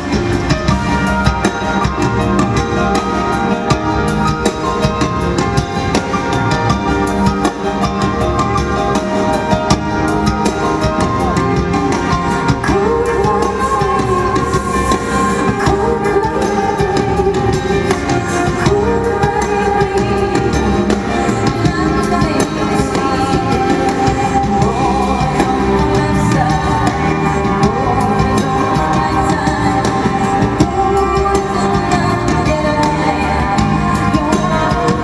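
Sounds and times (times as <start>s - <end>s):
band accompaniment: 0.0s - 35.0s
woman singing: 0.0s - 35.0s.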